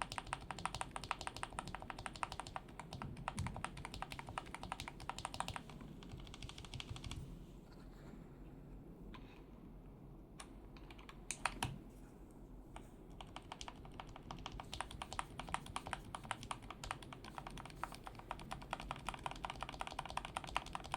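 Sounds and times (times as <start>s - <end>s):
mechanical keyboard typing: 0.0s - 7.2s, 10.8s - 11.8s, 12.8s - 20.9s.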